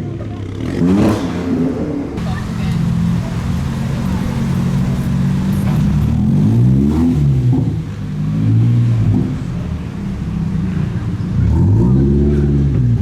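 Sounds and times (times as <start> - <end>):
car engine revving: 2.2 - 10.3.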